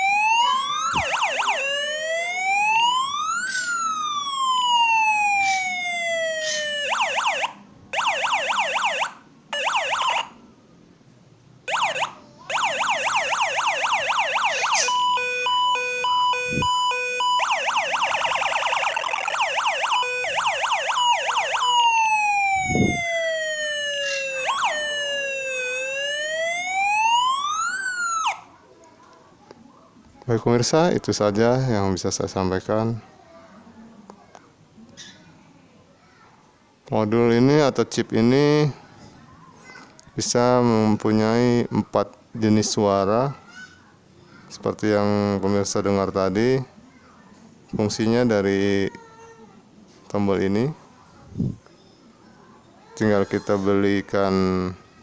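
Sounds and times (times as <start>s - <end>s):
toy siren wailing: 0.0s - 10.3s, 11.7s - 28.5s
electronic siren yelps and warbles: 0.0s - 10.4s, 11.7s - 28.5s.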